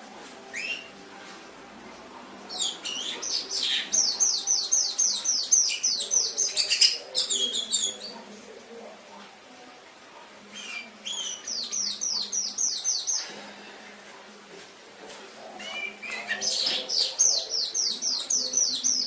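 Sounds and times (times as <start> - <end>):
canary singing: 0.0 - 8.6, 10.4 - 13.3, 15.4 - 19.0.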